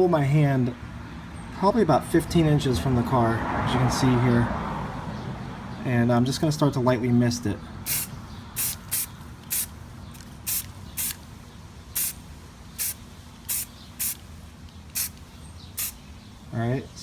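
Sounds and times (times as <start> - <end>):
spray paint can hissing: 7.9 - 16.0.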